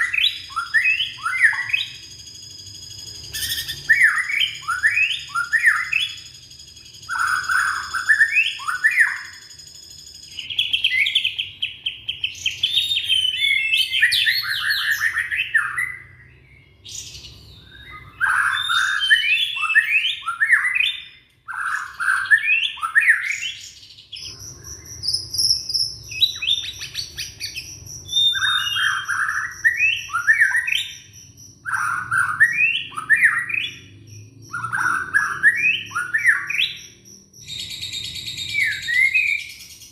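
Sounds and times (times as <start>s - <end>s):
thin steady high tone: 0.0s - 10.9s
songbird whistling song: 0.0s - 39.9s.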